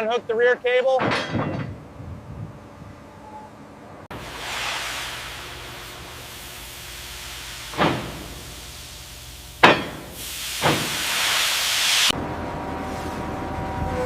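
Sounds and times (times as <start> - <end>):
heavy metal clanks ringing: 1.0 - 1.8, 9.6 - 10.2
loud hiss: 4.1 - 12.2
steady hiss: 4.1 - 12.2.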